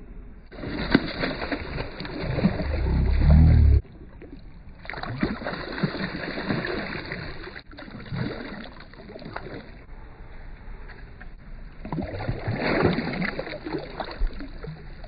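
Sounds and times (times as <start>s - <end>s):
water and boat noise: 0.0s - 15.0s
loud low boat rumble: 2.0s - 4.2s.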